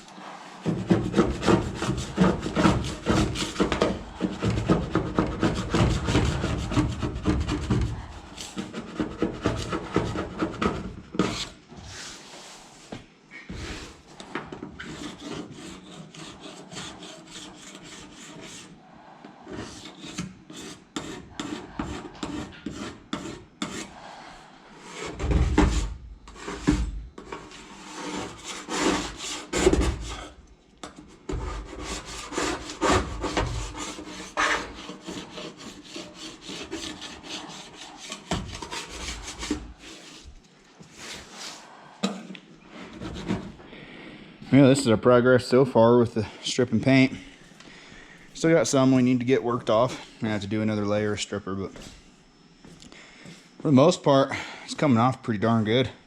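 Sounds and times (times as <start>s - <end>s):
hand scraper scraping paint: 0.0s - 41.7s, 42.7s - 43.6s.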